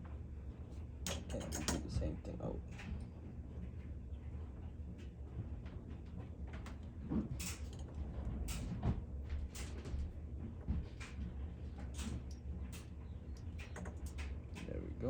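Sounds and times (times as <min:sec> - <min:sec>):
steady low hum: 0:00.0 - 0:15.0
small tools clicking and knocking: 0:01.1 - 0:02.0.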